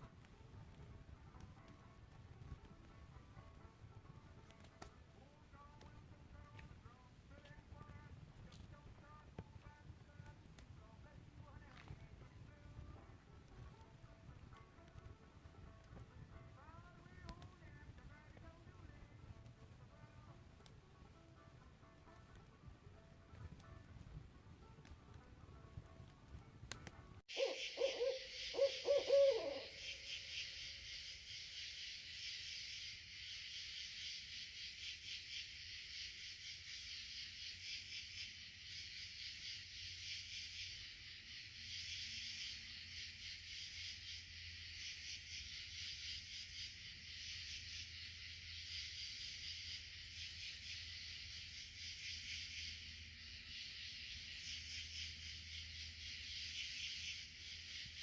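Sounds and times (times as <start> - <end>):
low hooting call: 27.3 - 30.6
insects trilling: 27.3 - 58.0.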